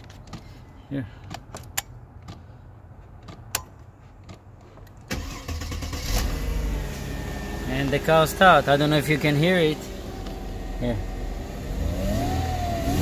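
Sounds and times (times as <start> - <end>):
car engine starting and running: 4.9 - 13.0.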